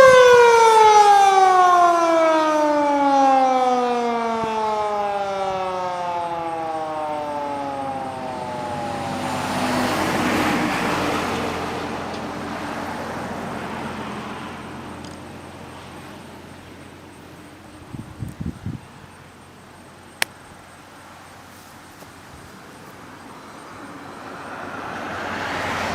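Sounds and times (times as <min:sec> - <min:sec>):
electromechanical siren winding down: 0:00.0 - 0:10.4.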